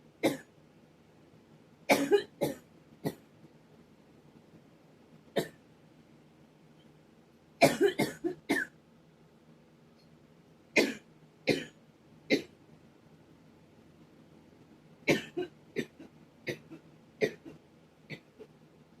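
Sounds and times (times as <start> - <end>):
person coughing: 1.9 - 3.2, 7.6 - 8.7, 15.1 - 18.4.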